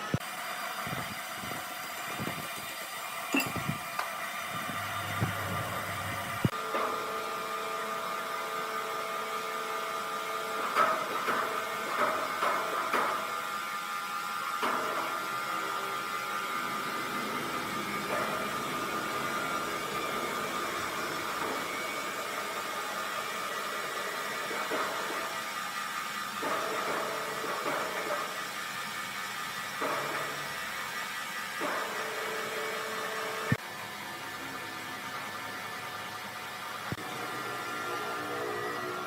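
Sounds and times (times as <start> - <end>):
sawmill machinery whining: 15.2 - 39.0.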